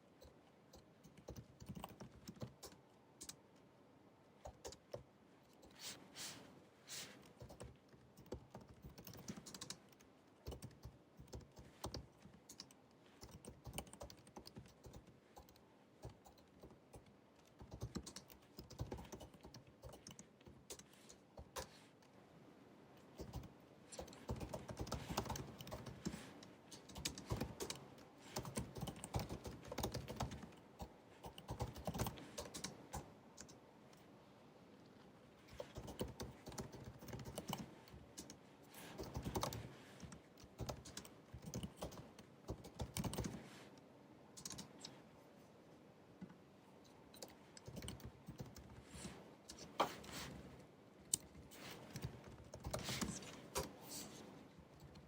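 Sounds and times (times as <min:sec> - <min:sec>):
laptop keyboard typing: 0:00.2 - 0:03.5, 0:04.4 - 0:05.8, 0:07.3 - 0:21.8, 0:23.2 - 0:33.6, 0:35.5 - 0:43.4, 0:44.4 - 0:44.9, 0:47.2 - 0:48.8, 0:51.2 - 0:53.7.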